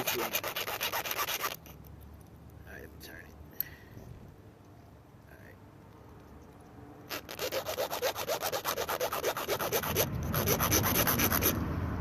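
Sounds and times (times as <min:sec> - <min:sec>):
hand saw cutting metal line: 0:00.0 - 0:01.7, 0:07.1 - 0:11.6.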